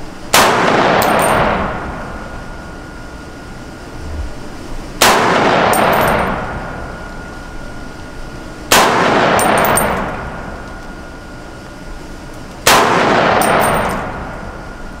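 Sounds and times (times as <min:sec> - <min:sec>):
rifle shots with rolling echo: 0:00.3 - 0:03.4, 0:05.0 - 0:07.9, 0:08.6 - 0:11.2, 0:12.6 - 0:14.8.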